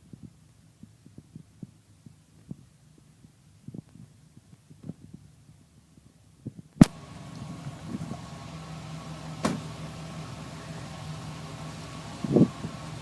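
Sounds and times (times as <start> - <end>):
car engine idling: 6.8 - 13.0.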